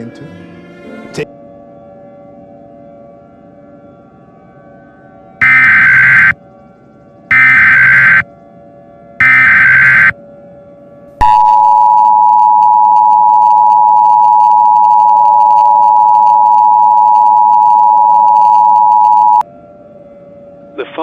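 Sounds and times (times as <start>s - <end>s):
screeching data burst: 5.4s - 6.4s, 7.3s - 8.2s, 9.2s - 10.2s
two-tone attention signal: 5.4s - 6.4s, 7.3s - 8.2s, 9.2s - 10.2s, 11.2s - 19.4s.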